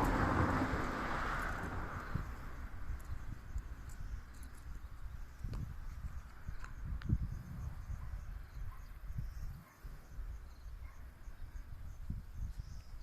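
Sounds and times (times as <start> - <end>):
low rumbling noise: 0.0 - 4.2
insects chirping: 0.0 - 13.0.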